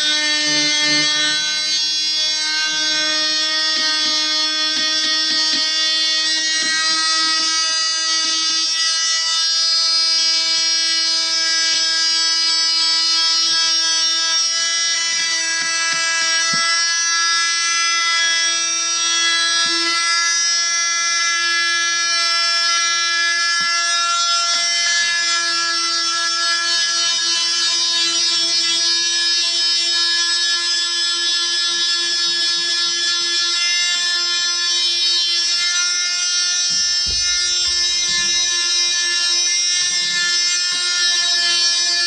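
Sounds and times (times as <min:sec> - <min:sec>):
oscillating multi-tool sanding wood: 0:00.0 - 0:42.0.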